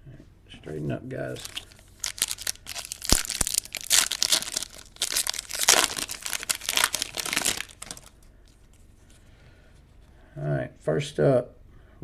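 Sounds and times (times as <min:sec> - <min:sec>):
wrapper crackling: 0:01.3 - 0:08.3.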